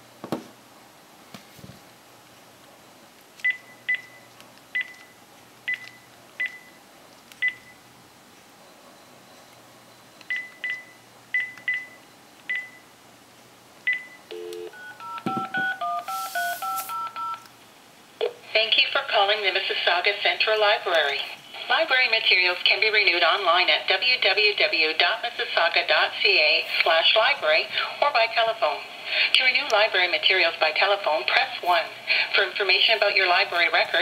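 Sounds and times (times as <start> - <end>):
keypad key-press beeps: 3.4 - 6.8, 7.4 - 7.8, 10.2 - 12.8, 13.9 - 17.5
touch-tone dialing tones: 13.9 - 17.5
dial tone: 14.3 - 17.4.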